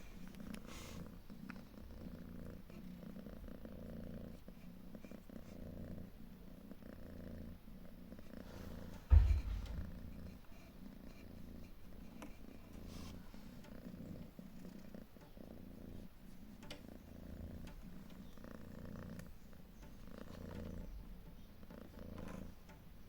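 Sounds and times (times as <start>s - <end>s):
cat purring: 0.0s - 23.0s
faint clicks: 16.0s - 23.0s.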